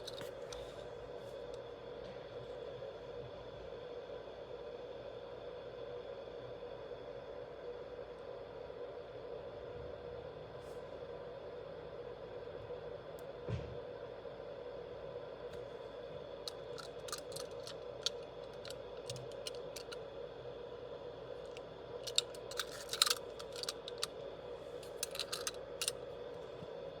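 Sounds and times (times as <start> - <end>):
steady low hum: 0.0 - 27.0
hands handling packaging: 16.5 - 20.0, 22.0 - 24.1, 24.8 - 25.9.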